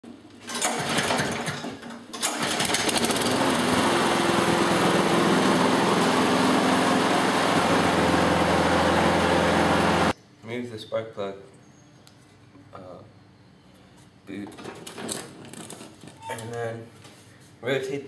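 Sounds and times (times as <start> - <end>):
lawn mower engine: 0.5 - 10.2.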